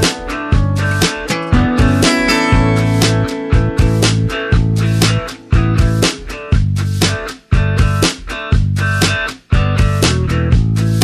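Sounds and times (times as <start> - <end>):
steady beat: 0.0 - 9.2
plucked guitar: 0.0 - 9.3
bass line: 0.0 - 11.0.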